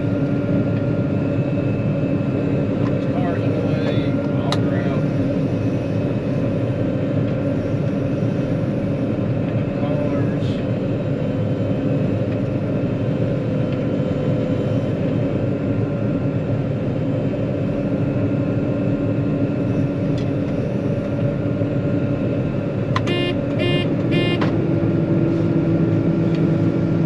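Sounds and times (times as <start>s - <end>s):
combine engine running: 0.0s - 27.0s
high electronic beeps: 23.1s - 24.4s.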